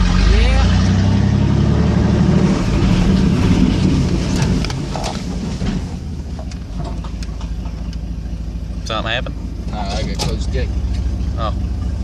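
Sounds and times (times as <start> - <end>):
pickup truck engine running: 0.0 - 12.0.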